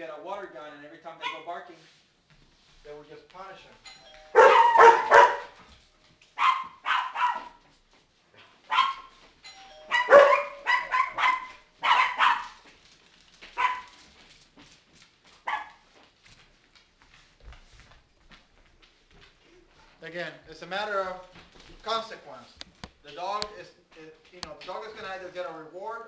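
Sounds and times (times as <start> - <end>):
small dogs yapping: 4.4 - 5.6, 6.4 - 7.6, 8.7 - 9.1, 9.9 - 12.6, 13.6 - 14.0.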